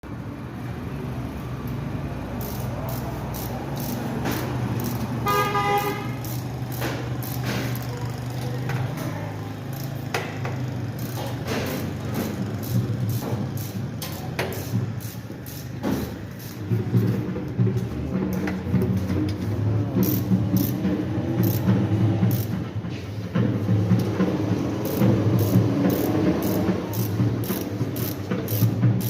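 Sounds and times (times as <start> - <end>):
motorcycle engine running: 2.0 - 15.5, 16.4 - 29.0
sharp clicks and knocks: 2.4 - 5.2, 6.2 - 29.0
motorcycle horn: 5.2 - 6.3.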